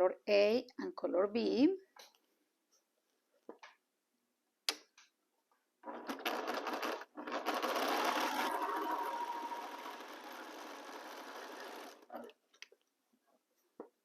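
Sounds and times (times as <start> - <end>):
sewing machine stitching: 5.8 - 12.4.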